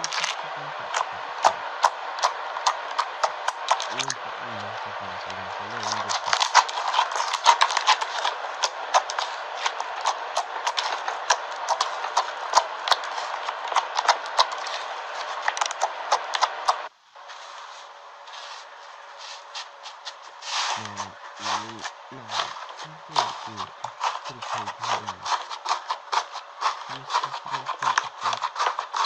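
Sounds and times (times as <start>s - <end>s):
steady hiss: 16.6s - 25.5s.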